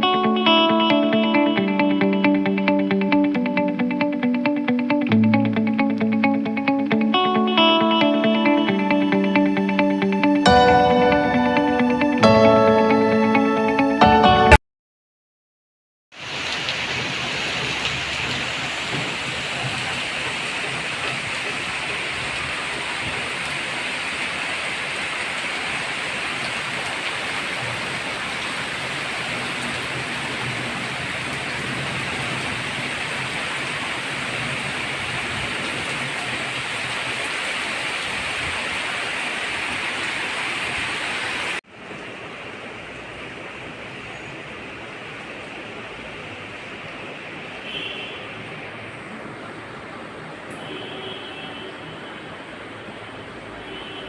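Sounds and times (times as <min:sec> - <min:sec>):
steady rain falling: 0:16.2 - 0:54.0.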